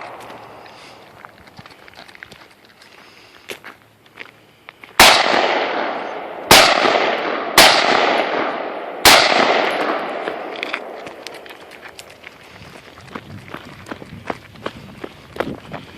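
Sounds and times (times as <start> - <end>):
gunshots with long echo: 5.0 - 11.4.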